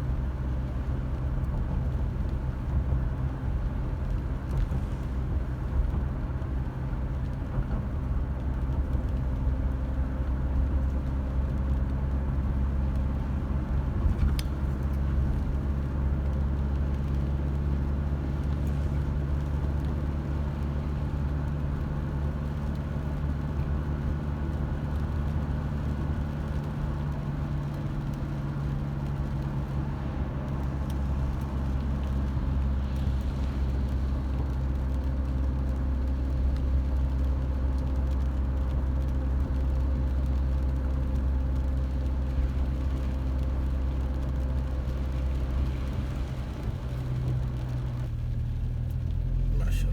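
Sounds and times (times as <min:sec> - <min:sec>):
road noise: 0:00.0 - 0:49.9
car engine humming: 0:49.1 - 0:49.9.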